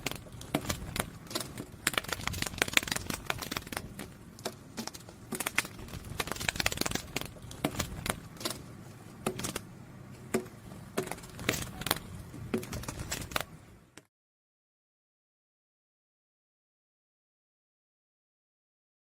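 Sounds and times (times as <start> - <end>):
butterfly wings fluttering: 0.0 - 4.1, 4.8 - 8.6, 11.1 - 13.5.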